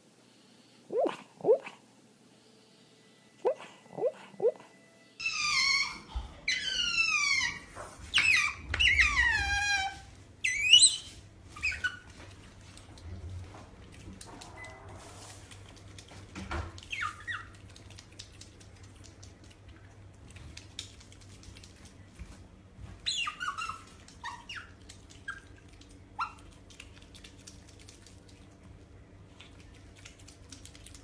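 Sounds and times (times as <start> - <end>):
faint low hum: 0.0 - 31.0
animal high squeaky calls: 5.2 - 12.0, 23.0 - 24.8.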